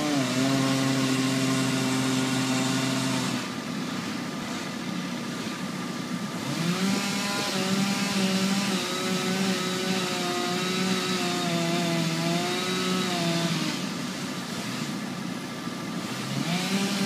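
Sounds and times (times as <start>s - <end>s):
engine revving: 6.4s - 13.8s, 16.0s - 17.0s.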